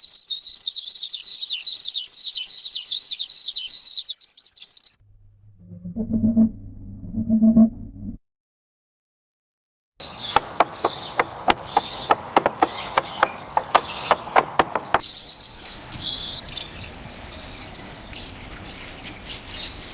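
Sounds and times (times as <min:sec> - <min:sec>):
bird high chirps: 0:00.0 - 0:05.0, 0:10.0 - 0:17.8
bird sharp clicking calls: 0:10.0 - 0:15.6.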